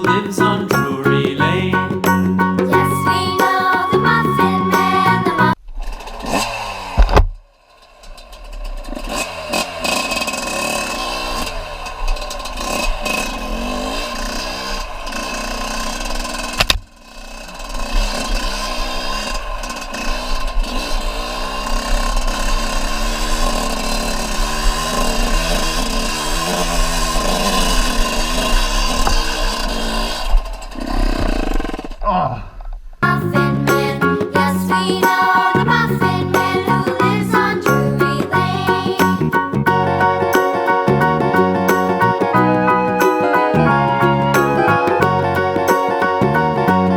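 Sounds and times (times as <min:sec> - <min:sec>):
off-road engine revving: 0:08.2 - 0:31.9.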